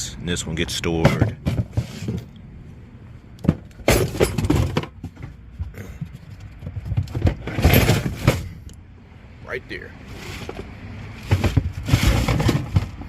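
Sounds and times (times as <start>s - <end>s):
hard items clattering and knocking: 1.0s - 2.4s, 3.4s - 8.6s, 10.3s - 13.0s.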